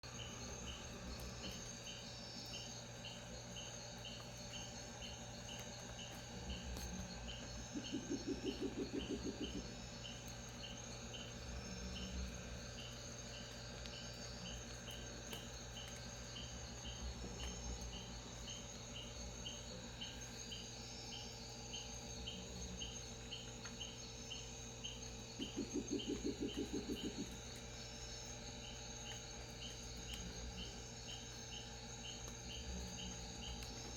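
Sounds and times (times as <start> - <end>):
insects chirping: 0.0 - 33.9
low pulsing animal call: 7.6 - 9.9, 25.4 - 27.4.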